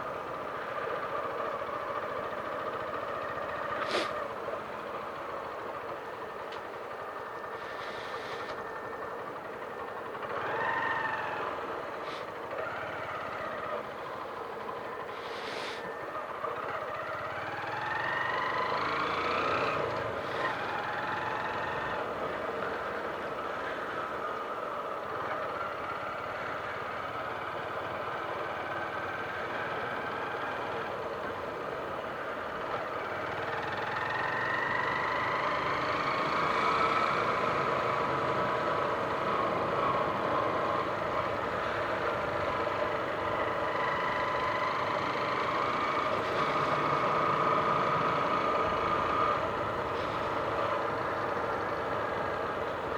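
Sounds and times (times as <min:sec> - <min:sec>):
motorcycle engine accelerating: 0:00.0 - 0:52.9.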